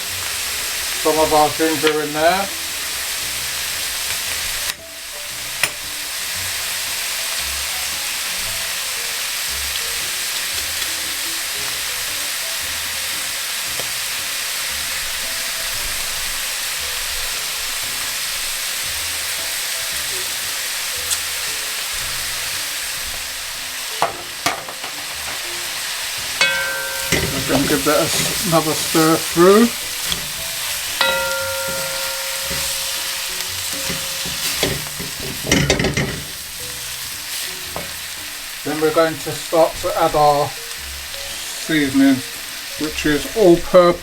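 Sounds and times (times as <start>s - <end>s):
meat sizzling in a pot: 0.0s - 44.0s
spoon knocking against pot: 26.4s - 28.9s, 30.0s - 36.4s.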